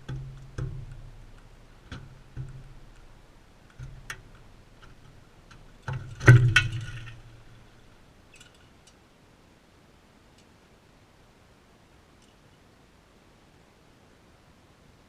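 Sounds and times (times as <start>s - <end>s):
bird beak ticking and knocking: 0.0s - 8.6s.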